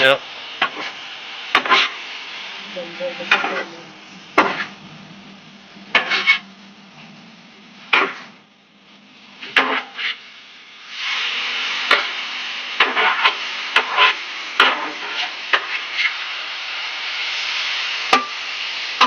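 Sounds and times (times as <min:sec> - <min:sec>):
food sizzling in a pan: 0:00.0 - 0:19.0
utensil scraping a pan: 0:05.9 - 0:06.5, 0:09.4 - 0:10.2, 0:12.8 - 0:16.1.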